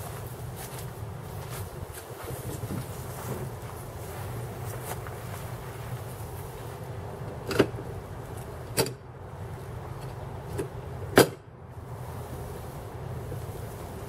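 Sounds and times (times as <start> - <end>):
low background rumble: 0.0 - 14.0
sharp knocks of dump cart: 7.4 - 7.8, 8.7 - 9.0, 10.0 - 11.5.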